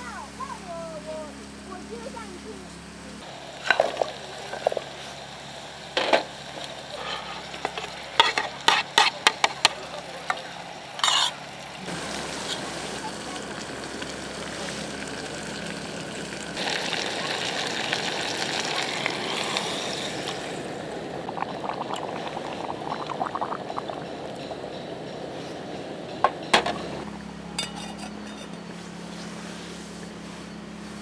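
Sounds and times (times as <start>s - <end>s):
liquid pouring: 11.8s - 25.2s.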